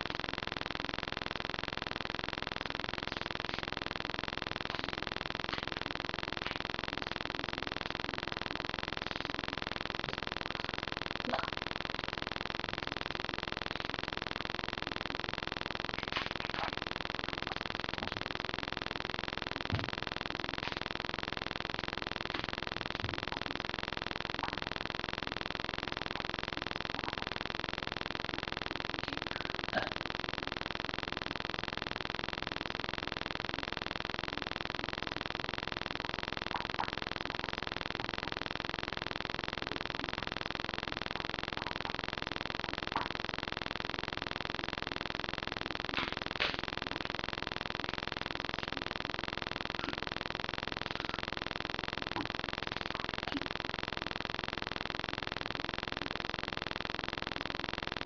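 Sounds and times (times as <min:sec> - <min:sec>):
microphone background hiss: 0:00.0 - 0:30.6, 0:35.8 - 0:54.7
faint clicks: 0:00.0 - 0:58.0.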